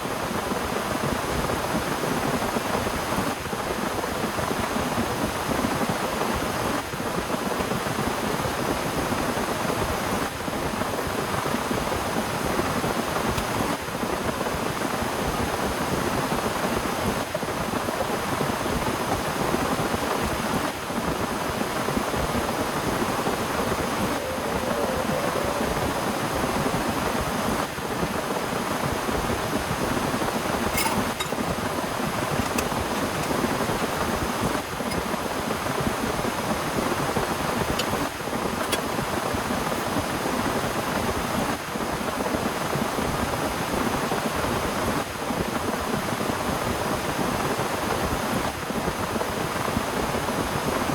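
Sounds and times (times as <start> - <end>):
heavy rain falling: 14.3 - 41.2.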